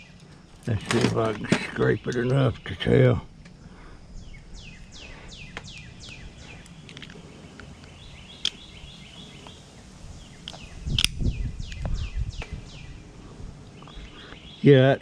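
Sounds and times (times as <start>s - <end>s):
bird chirping: 0.0s - 15.0s.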